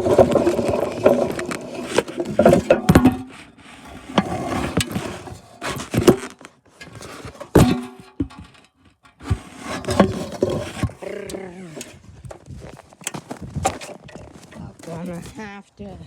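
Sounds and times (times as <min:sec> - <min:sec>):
snow plow blade scraping: 0:00.0 - 0:15.4
snow plow blade knocking: 0:07.0 - 0:11.0.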